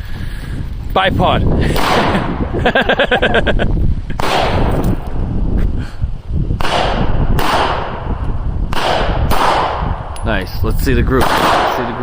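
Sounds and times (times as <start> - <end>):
gunshots: 1.7 - 2.4, 4.2 - 4.8, 6.6 - 10.0, 11.1 - 12.0.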